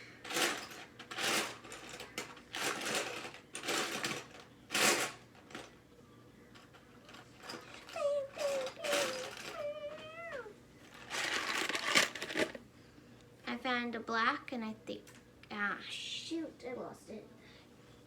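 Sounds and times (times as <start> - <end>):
plastic lego pieces rattling: 11.0 - 12.6.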